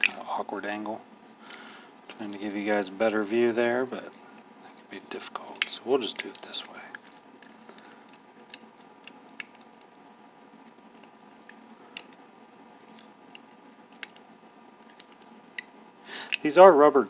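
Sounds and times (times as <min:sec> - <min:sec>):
low room hum: 0:00.0 - 0:17.0.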